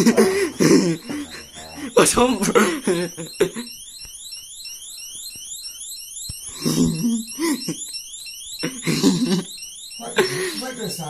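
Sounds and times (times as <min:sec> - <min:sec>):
person speaking: 0:00.0 - 0:03.2
high-pitched alarm chirp: 0:00.0 - 0:11.0.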